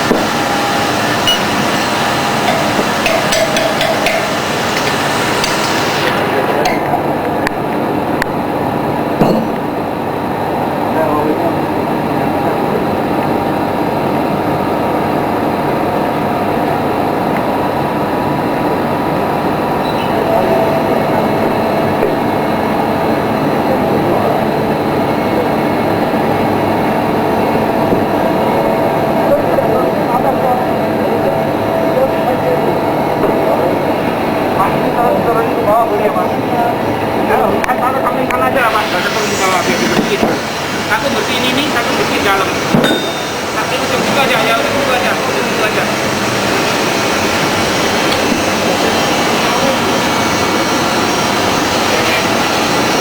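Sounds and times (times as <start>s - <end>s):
high hiss: 0.0s - 6.6s, 38.6s - 53.0s
factory machinery noise: 0.0s - 53.0s
hand tools knocking on steel: 2.4s - 5.6s, 9.2s - 9.7s.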